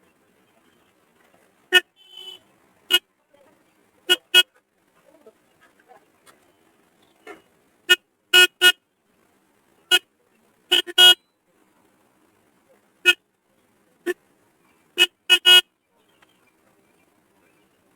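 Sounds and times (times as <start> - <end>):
car horn toots: 1.7 - 3.0, 7.9 - 8.8, 10.7 - 11.3, 15.0 - 15.7.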